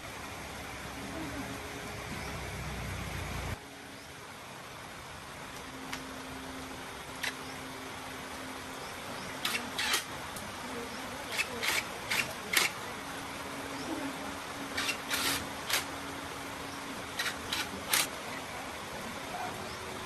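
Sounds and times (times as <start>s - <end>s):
faint steady hum: 0.0s - 20.0s
hand tool scraping metal: 14.8s - 15.8s.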